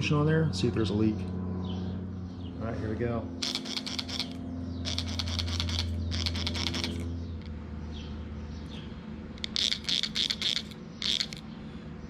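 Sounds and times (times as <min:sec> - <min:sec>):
steady low hum: 0:00.0 - 0:12.0
spray bottle squirting: 0:03.4 - 0:07.1, 0:09.4 - 0:11.4.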